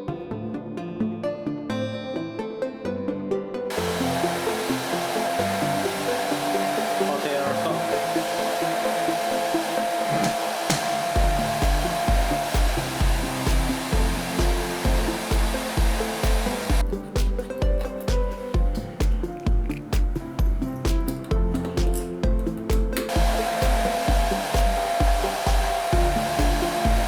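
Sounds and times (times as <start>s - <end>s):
electronic music: 0.0s - 27.0s
hot-air blower rushing: 3.7s - 17.0s, 22.9s - 27.0s.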